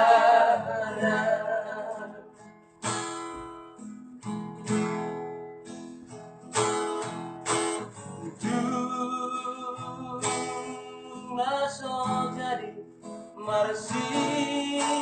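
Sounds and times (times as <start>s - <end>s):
acoustic guitar strumming chords: 0.0s - 15.0s.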